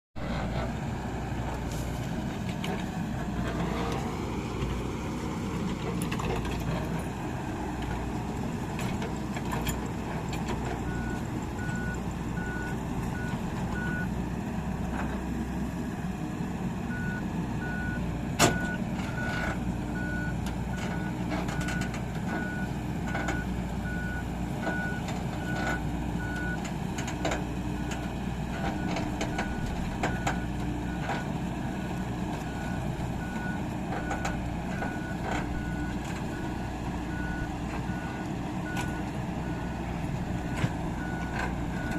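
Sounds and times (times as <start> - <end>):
diesel engine running: 0.2 - 41.9
reversing alarm beeping: 10.9 - 14.1, 16.9 - 19.4, 32.5 - 39.8, 40.5 - 41.9.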